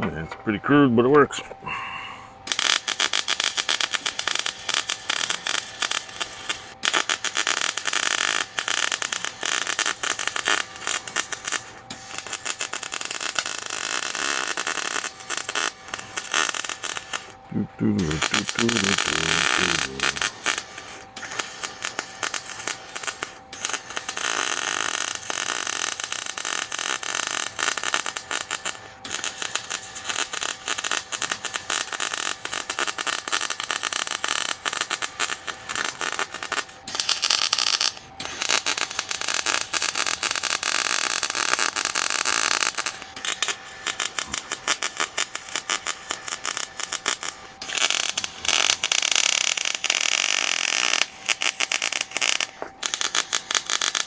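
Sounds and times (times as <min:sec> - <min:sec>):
arc welder crackling: 0:02.4 - 0:54.0.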